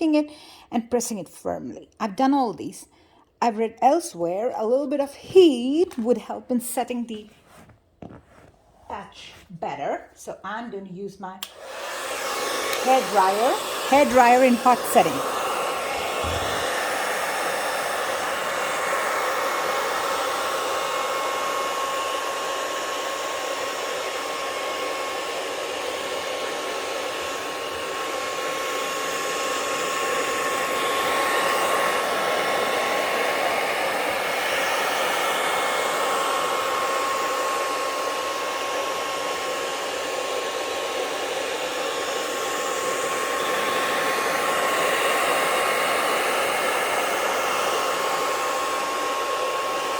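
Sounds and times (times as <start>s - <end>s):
hair dryer running: 11.4s - 49.9s.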